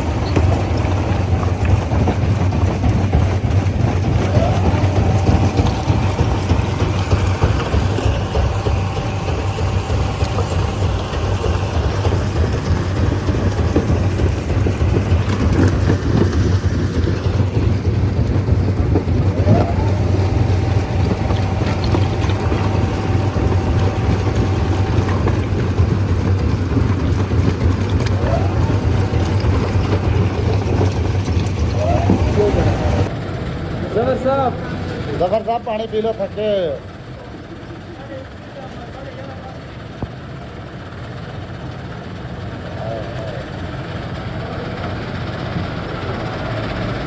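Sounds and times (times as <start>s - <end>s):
stone crusher running: 0.0s - 47.0s.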